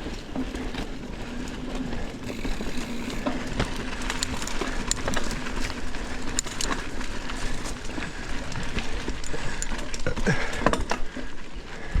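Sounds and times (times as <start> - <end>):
bike clattering and rattling: 0.0 - 11.9
bike tyres on dirt: 0.0 - 12.0.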